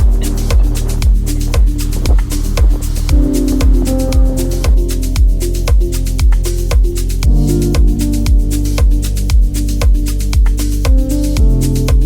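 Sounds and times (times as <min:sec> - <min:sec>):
electronic dance music: 0:00.0 - 0:07.9.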